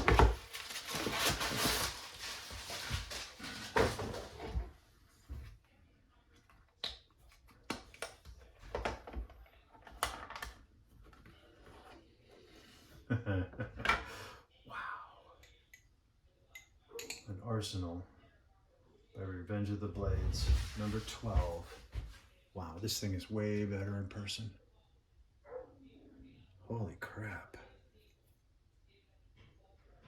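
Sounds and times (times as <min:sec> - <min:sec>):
packaging rustling: 0:00.0 - 0:04.5.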